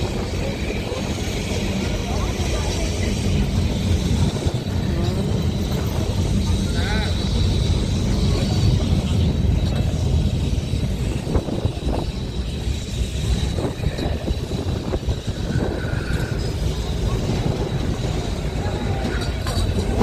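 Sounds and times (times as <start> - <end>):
tram running gear rumble: 0.0 - 20.0.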